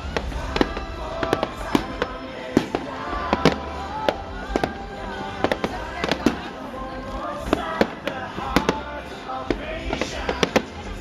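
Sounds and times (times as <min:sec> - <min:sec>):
fireworks bursting with sharp bangs: 0:00.0 - 0:11.0
music playing: 0:00.0 - 0:11.0.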